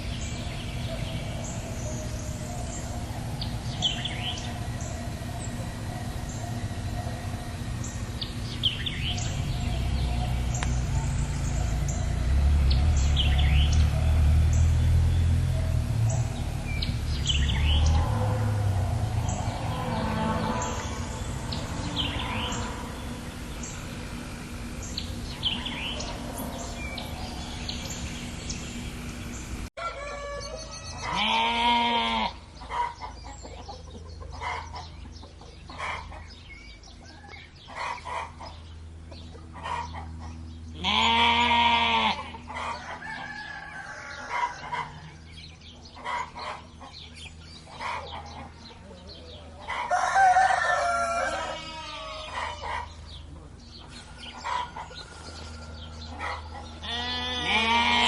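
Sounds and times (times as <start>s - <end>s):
small birds chirping: 0.0s - 29.7s, 30.4s - 50.0s
steady outdoor noise: 0.0s - 58.0s
rooster crowing: 17.3s - 24.2s, 29.8s - 32.0s, 42.5s - 45.2s, 49.7s - 52.9s
hens clucking: 31.0s - 36.2s, 37.7s - 58.0s.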